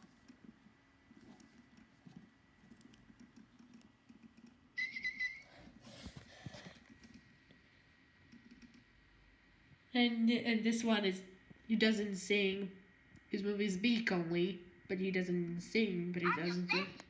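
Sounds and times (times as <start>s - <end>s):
electronic toy bird chirp: 4.8s - 5.5s.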